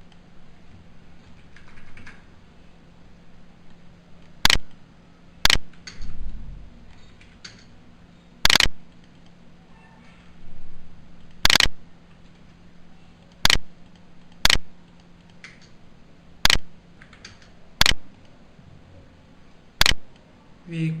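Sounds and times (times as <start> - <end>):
computer mouse clicks: 3.7 - 4.8, 5.4 - 6.1, 8.4 - 9.4, 11.2 - 12.6, 13.2 - 15.8, 16.4 - 18.4, 19.8 - 20.2.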